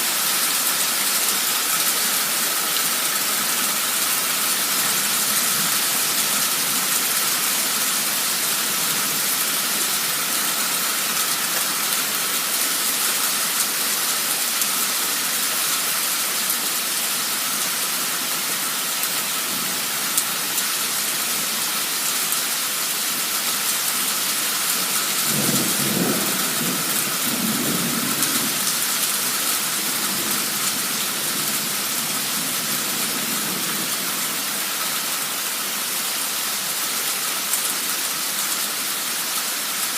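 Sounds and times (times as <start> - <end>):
heavy rain pouring: 0.0 - 39.9
thunder rumbling: 25.3 - 28.8.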